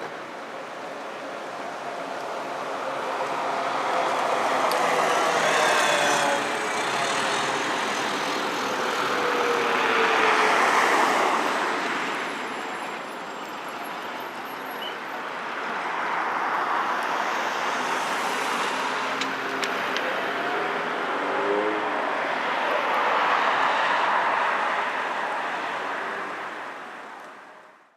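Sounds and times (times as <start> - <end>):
vehicles passing on street: 0.0 - 27.9.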